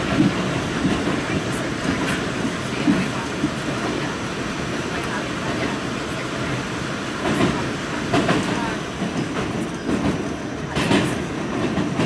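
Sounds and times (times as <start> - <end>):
wheels clacking over rail joints: 0.0 - 4.1, 7.2 - 12.0
wheels rumbling on rail: 0.0 - 12.0.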